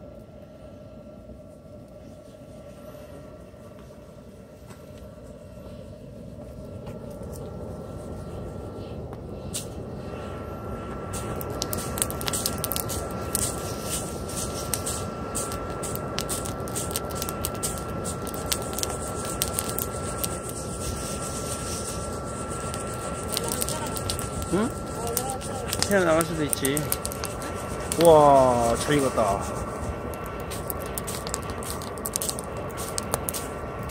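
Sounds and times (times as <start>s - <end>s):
wood fire roaring: 0.0s - 33.9s
crackling and popping: 11.2s - 33.9s.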